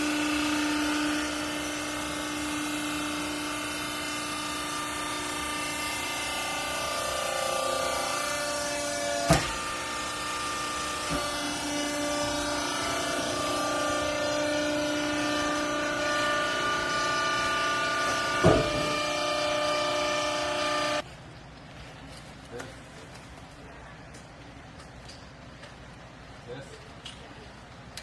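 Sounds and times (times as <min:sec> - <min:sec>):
hydraulic power unit whining: 0:00.0 - 0:21.0
sharp machine clunks: 0:09.2 - 0:09.7, 0:17.4 - 0:19.2.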